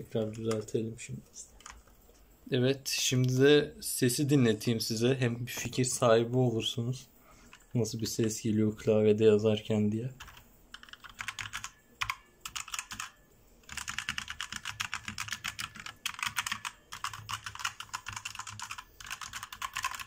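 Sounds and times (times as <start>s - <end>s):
mechanical keyboard typing: 10.2s - 20.0s.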